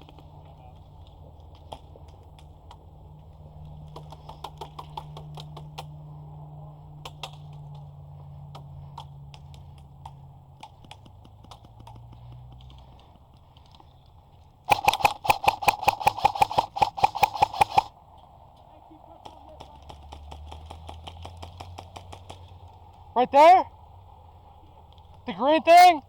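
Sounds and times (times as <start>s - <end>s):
airsoft gun full-auto fire: 14.7s - 17.9s
sharp clicks: 14.7s - 17.9s.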